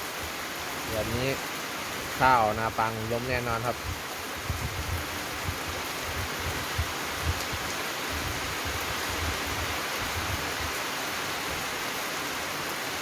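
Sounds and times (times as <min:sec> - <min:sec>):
heavy rain pouring: 0:00.0 - 0:13.0
wind buffeting microphone: 0:03.6 - 0:10.7.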